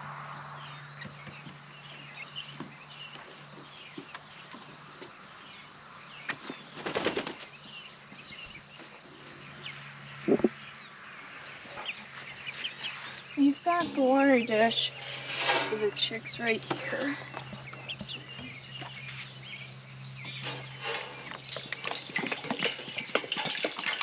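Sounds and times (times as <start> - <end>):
chicks peeping: 0.7 - 23.2
rapid wing flapping: 6.4 - 7.5.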